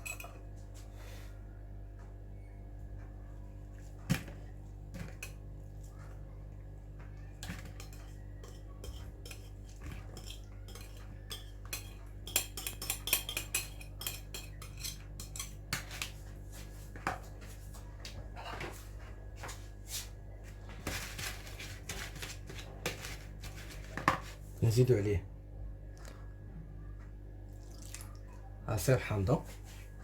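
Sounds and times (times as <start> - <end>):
utensils clinking against a bowl: 0.0 - 0.5, 7.4 - 16.2.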